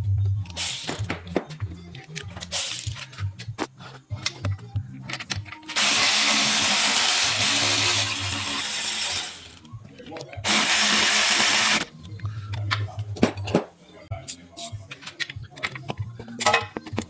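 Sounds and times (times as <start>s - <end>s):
power tool running: 5.8s - 9.6s, 10.4s - 11.9s
tools knocking on metal: 15.1s - 17.0s.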